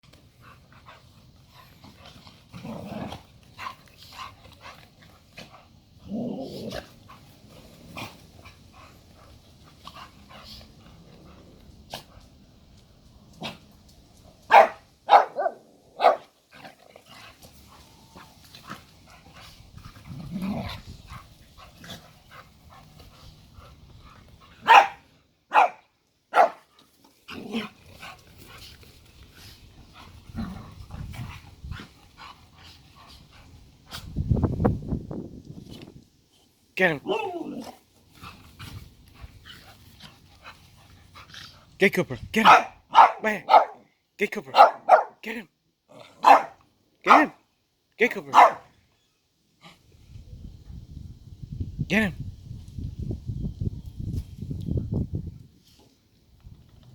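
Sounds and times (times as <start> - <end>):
dogs growling: 0.2 - 12.4, 15.1 - 24.6, 26.9 - 34.1, 37.0 - 41.8, 45.9 - 46.6
dogs barking sharply: 14.5 - 16.3, 24.6 - 26.7, 42.4 - 43.8, 44.5 - 45.3, 46.2 - 47.4, 48.2 - 48.7.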